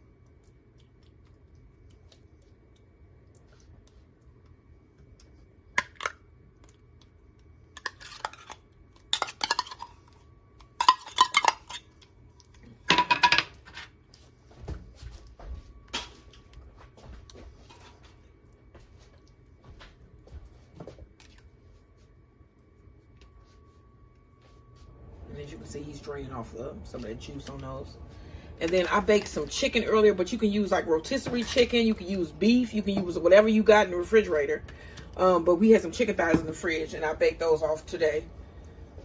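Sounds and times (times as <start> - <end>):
utensils and dishes clattering: 10.8 - 11.9.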